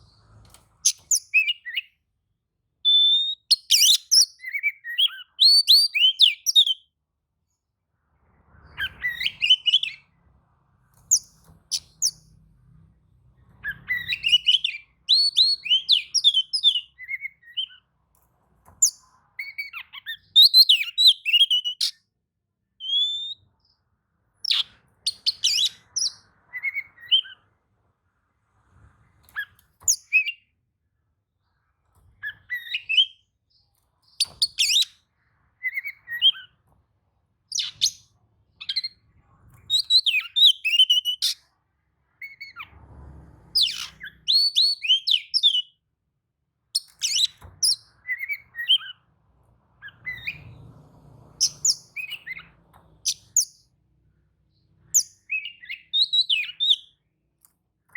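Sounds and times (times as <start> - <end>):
songbird whistling and chattering: 0.8 - 1.9, 2.8 - 6.8, 8.7 - 10.0, 11.1 - 12.2, 13.6 - 17.8, 18.8 - 22.0, 22.8 - 23.4, 24.4 - 27.4, 32.2 - 33.2, 34.1 - 35.0, 35.6 - 36.5, 37.5 - 38.0, 39.7 - 41.4, 43.6 - 45.7, 46.8 - 49.0, 51.4 - 53.6, 54.9 - 57.0.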